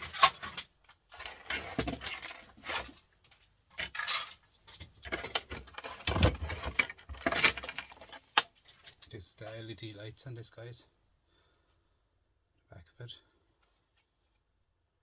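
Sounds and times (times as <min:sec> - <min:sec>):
plastic and metal parts clattering: 0:00.0 - 0:09.6.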